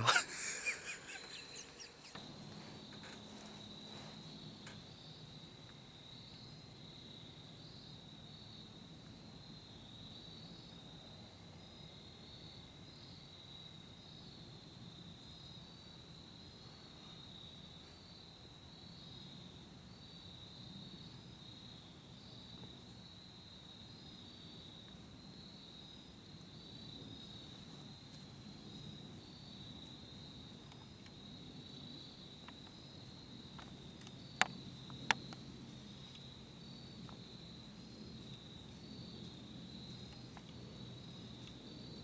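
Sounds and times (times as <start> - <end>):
insects chirping: 0.0 - 5.4.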